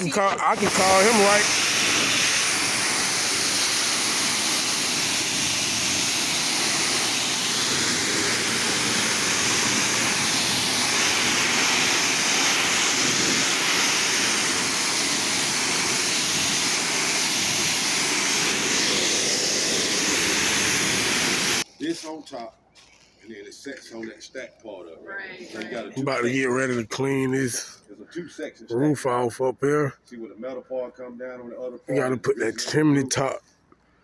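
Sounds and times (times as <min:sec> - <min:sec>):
pressure washer spraying: 0:00.0 - 0:21.6.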